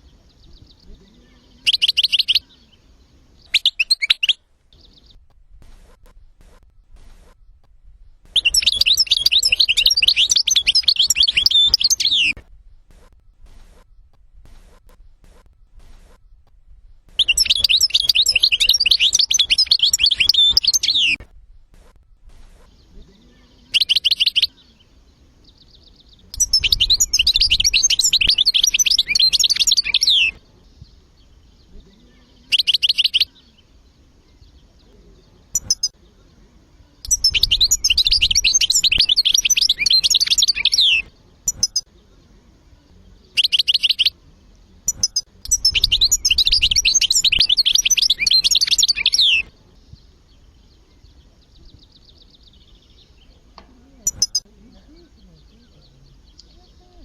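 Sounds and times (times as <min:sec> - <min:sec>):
finch twittering song: 0:00.0 - 0:57.0.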